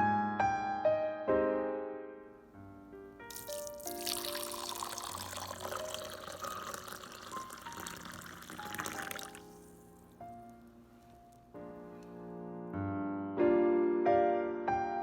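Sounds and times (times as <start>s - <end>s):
soft piano music: 0.0s - 15.0s
liquid pouring: 3.3s - 10.5s.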